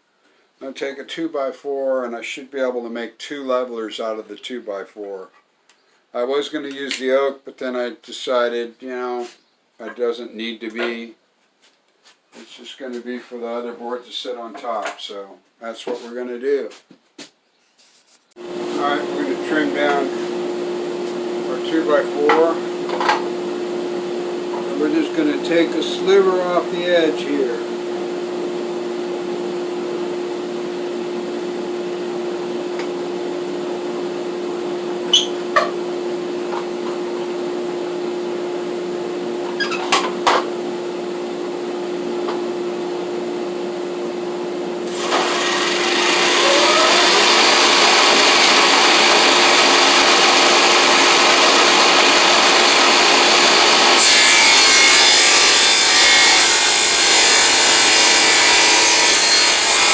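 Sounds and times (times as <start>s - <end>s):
saw humming: 18.4s - 37.5s, 44.8s - 59.9s
saw cutting wood: 18.7s - 20.3s, 21.5s - 23.2s, 24.5s - 27.7s, 44.9s - 59.9s.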